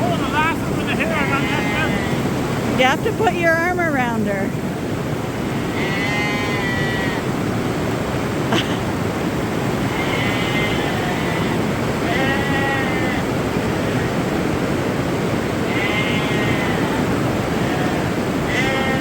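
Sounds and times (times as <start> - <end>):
steady rushing noise: 0.0 - 19.0
lambs bleating: 0.2 - 2.3, 5.4 - 7.3, 9.8 - 13.3, 15.6 - 19.0.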